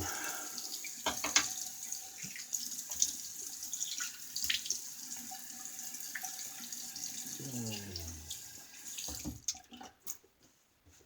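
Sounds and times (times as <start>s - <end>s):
tap running into a sink: 1.0s - 1.6s, 8.9s - 9.5s.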